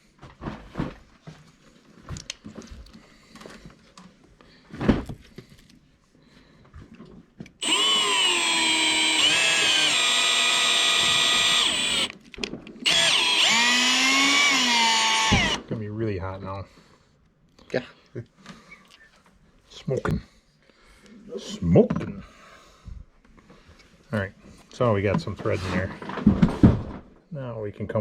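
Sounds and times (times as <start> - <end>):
power drill whining: 7.6 - 12.2, 12.8 - 15.6.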